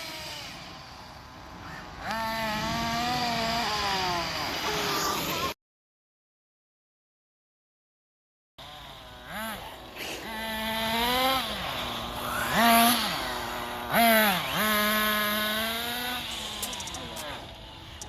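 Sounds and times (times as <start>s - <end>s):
radio-controlled car motor revving: 0.0s - 5.6s, 8.6s - 18.0s.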